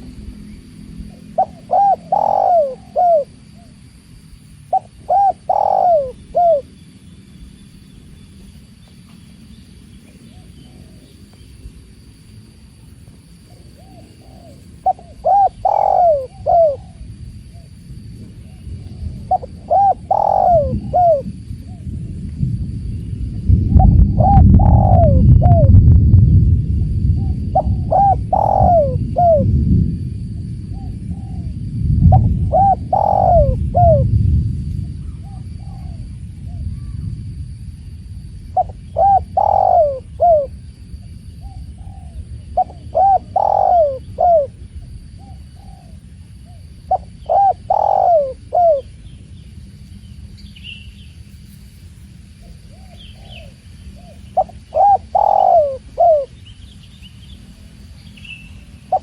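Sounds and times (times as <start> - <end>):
dove cooing: 0.0 - 3.8, 4.6 - 6.8, 10.0 - 11.2, 13.4 - 21.9, 23.7 - 25.8, 27.2 - 29.6, 30.7 - 34.2, 34.8 - 37.1, 38.5 - 40.6, 41.4 - 49.0, 52.4 - 56.4
low rumbling noise: 0.0 - 59.0
faint bird chirps: 52.4 - 59.0.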